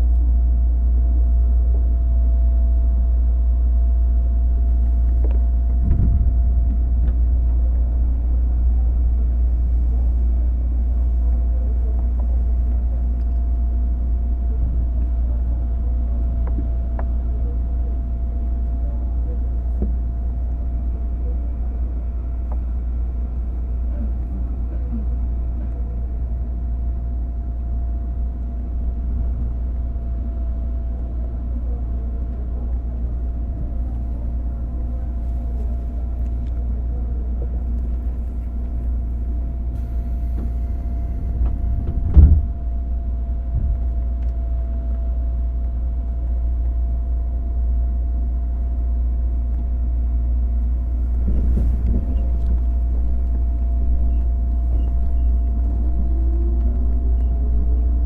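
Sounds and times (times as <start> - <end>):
train interior rumble: 0.0 - 58.0
loud thump: 5.8 - 6.8, 41.4 - 42.7.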